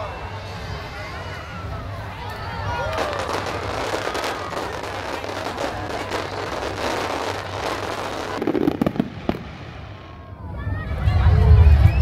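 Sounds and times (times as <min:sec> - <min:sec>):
fireworks crackling: 0:01.7 - 0:10.4
heavy firework bangs: 0:02.9 - 0:10.2.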